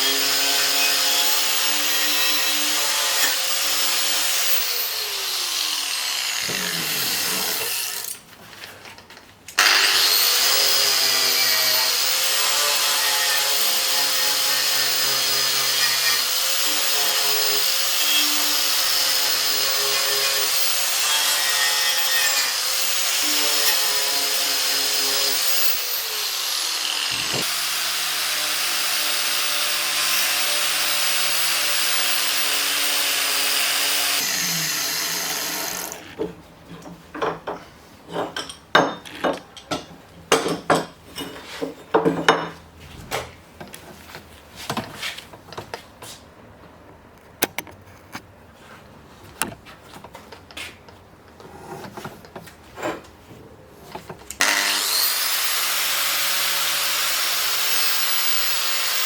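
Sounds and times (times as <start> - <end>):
electric power tool running: 20.5 - 36.2, 54.4 - 59.0
sharp clicks and knocks: 46.9 - 48.2.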